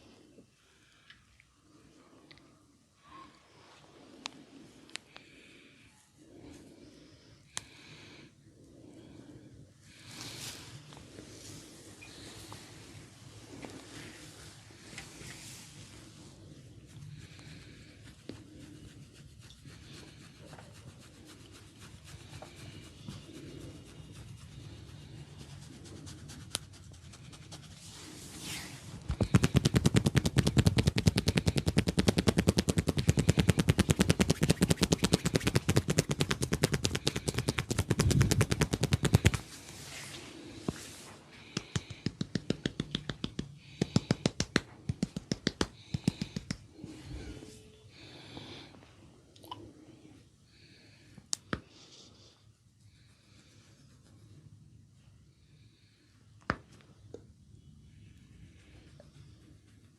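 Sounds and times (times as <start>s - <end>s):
hands rubbing head: 10.0s - 47.6s
hand taps on head: 41.5s - 46.6s.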